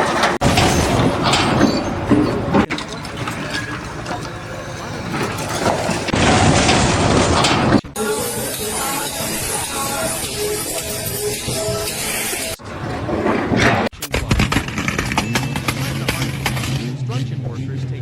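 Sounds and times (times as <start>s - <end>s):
machinery engines running: 0.0s - 13.9s
machinery clanking: 0.0s - 14.0s.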